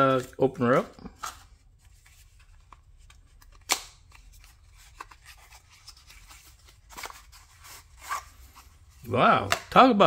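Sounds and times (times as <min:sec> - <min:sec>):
packaging rubbing and handling: 0:00.0 - 0:09.2.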